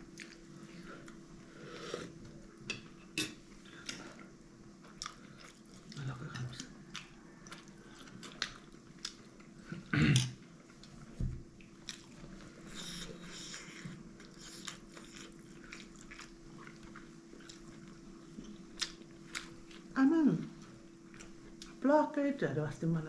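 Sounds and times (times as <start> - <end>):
faint steady hum: 0.0 - 23.0
chewing and biting: 4.8 - 9.6, 13.6 - 19.9.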